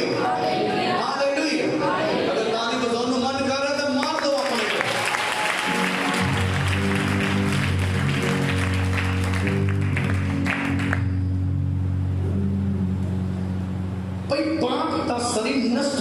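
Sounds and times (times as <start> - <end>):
congregation clapping: 3.8 - 11.2
sustained low musical chords: 5.9 - 16.0.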